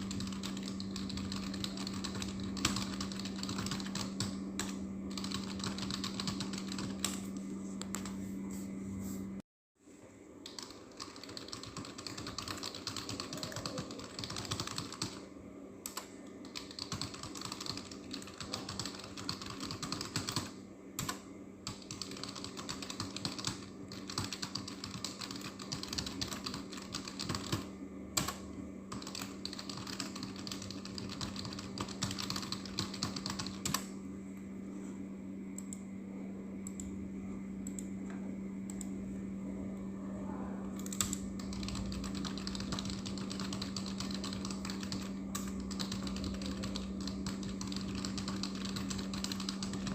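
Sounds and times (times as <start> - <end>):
fast keyboard typing: 0.0 - 7.2, 10.5 - 15.2, 15.9 - 33.9, 40.8 - 49.9
steady low hum: 0.0 - 49.9.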